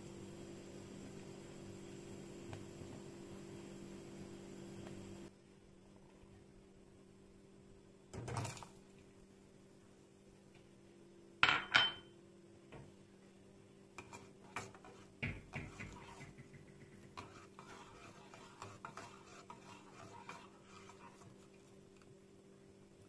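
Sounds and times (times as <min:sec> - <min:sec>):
kitchenware clinking: 0:11.4 - 0:12.1.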